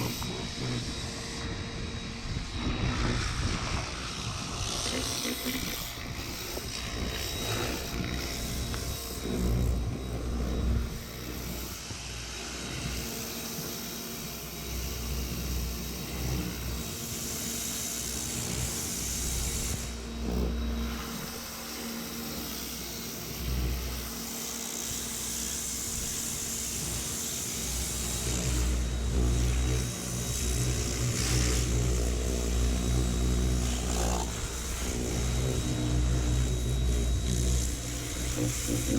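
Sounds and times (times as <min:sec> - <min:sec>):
pressure washer rumbling: 0:23.1 - 0:38.9.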